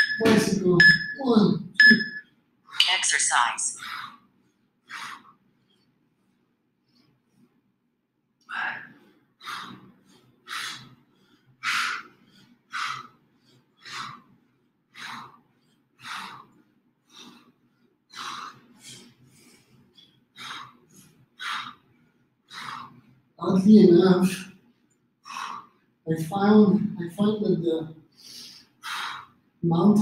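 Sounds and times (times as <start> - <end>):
person breathing hard: 3.8 - 7.5, 8.5 - 23.3, 24.6 - 25.9, 28.1 - 29.4.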